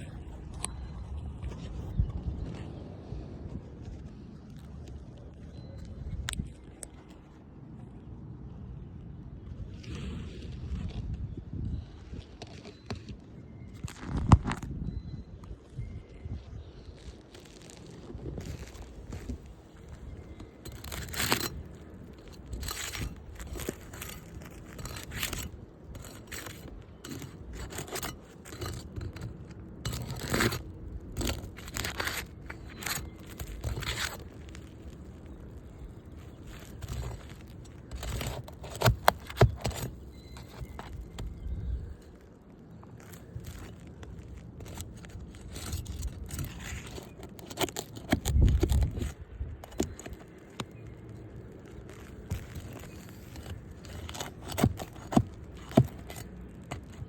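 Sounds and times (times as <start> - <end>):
roof shingles scraping and crunching: 16.8 - 57.0.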